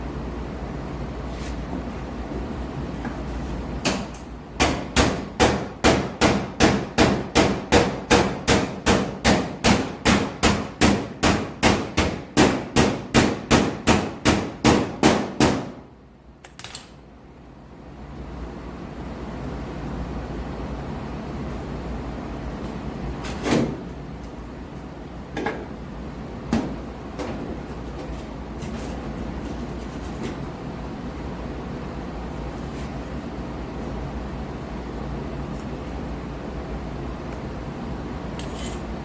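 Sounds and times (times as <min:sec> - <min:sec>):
low steady hum: 0:00.0 - 0:07.5
hammer striking sheet metal: 0:03.9 - 0:15.8.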